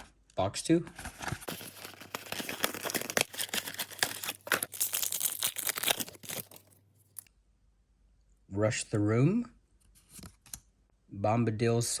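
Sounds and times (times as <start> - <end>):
packaging tearing and crinkling: 1.4 - 7.3.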